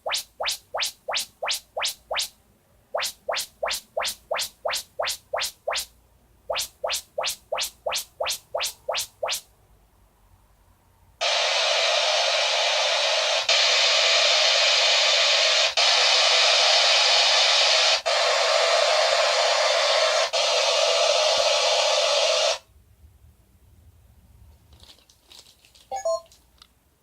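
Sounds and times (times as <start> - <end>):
test noise hiss: 0.0 - 9.6, 11.2 - 22.7
rising sweep tones: 3.0 - 5.9, 6.5 - 9.4.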